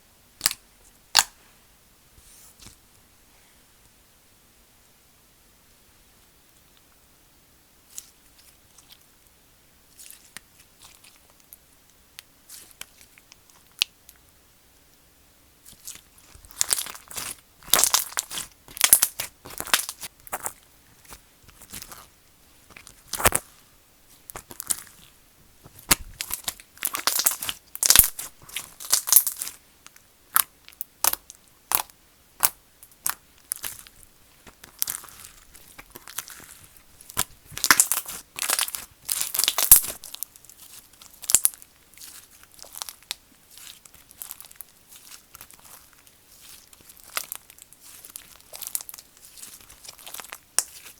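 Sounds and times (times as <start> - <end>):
slime squeezed crunching and popping: 15.7 - 22.0, 22.7 - 23.5, 24.2 - 25.1, 25.7 - 29.6, 30.3 - 50.9.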